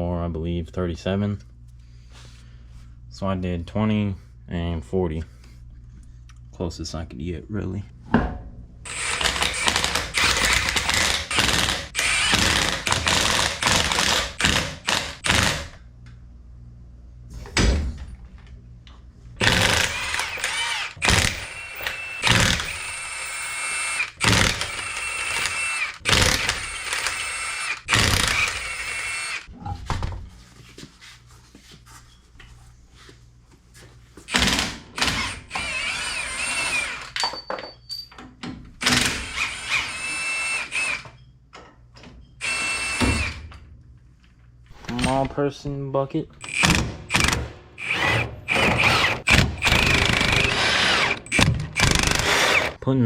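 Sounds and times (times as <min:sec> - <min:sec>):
power tool whining: 0:08.9 - 0:15.7, 0:19.4 - 0:29.5, 0:46.4 - 0:52.8.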